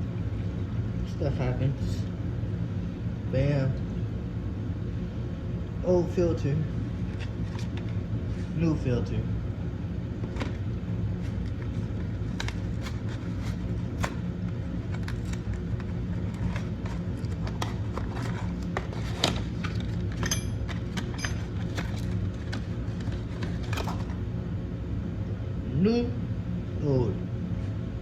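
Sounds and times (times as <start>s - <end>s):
steady low hum: 0.0s - 28.0s
tools clicking and clinking: 20.1s - 22.0s.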